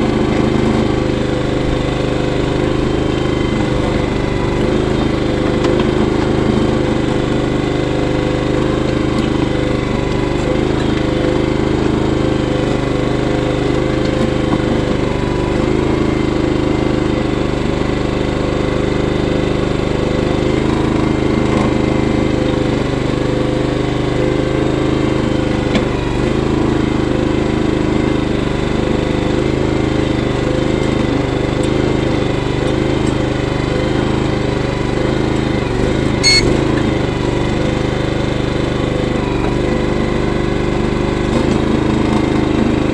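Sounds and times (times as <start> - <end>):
digging machine engine running: 0.0 - 42.9.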